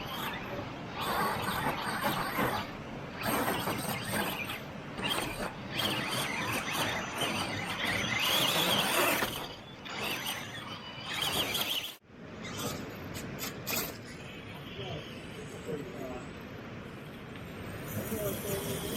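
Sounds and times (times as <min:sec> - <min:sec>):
buggy engine revving: 0:00.0 - 0:12.7.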